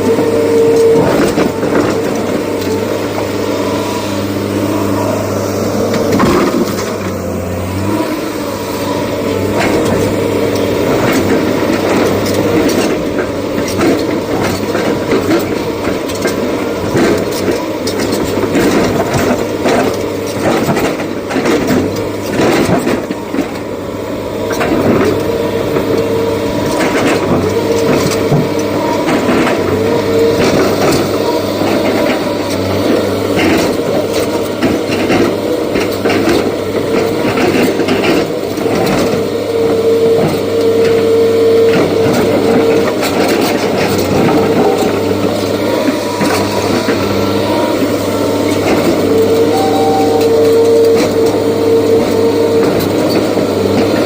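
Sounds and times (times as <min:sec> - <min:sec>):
clanks and clatter of digging: 0:00.0 - 0:05.1, 0:05.8 - 0:08.2, 0:08.8 - 0:23.8, 0:24.4 - 0:54.0
held whine: 0:00.0 - 0:20.0, 0:39.5 - 0:54.0
excavator diesel engine running: 0:00.0 - 0:54.0.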